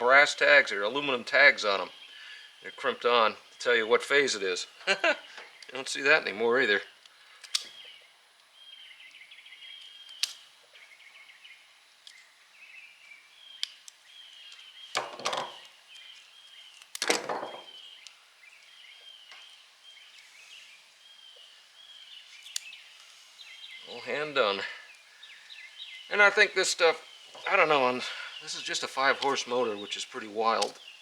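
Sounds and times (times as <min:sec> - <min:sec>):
small birds chirping: 0:00.0 - 0:31.0
light clicks: 0:07.0 - 0:07.8.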